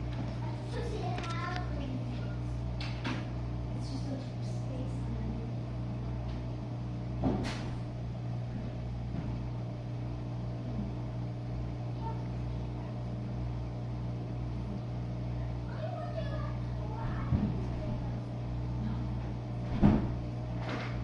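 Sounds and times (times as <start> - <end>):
dishwasher humming: 0.0 - 21.0.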